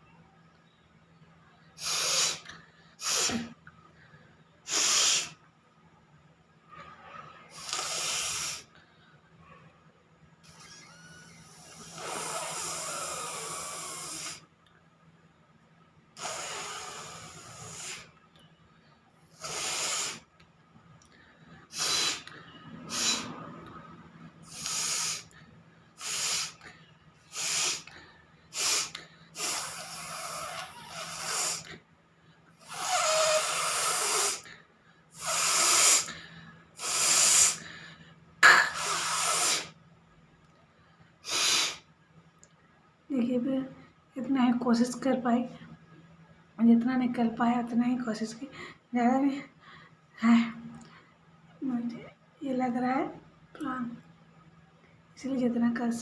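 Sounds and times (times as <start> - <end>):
woman blowing through her nose: 1.8 - 3.5, 4.7 - 5.4, 7.5 - 8.7, 10.4 - 14.4, 16.2 - 18.1, 19.3 - 20.3, 21.7 - 23.5, 24.4 - 25.4, 26.0 - 26.6, 27.2 - 27.9, 28.5 - 31.8, 32.6 - 34.5, 35.2 - 36.2, 36.8 - 37.7, 38.4 - 39.8, 41.2 - 41.8.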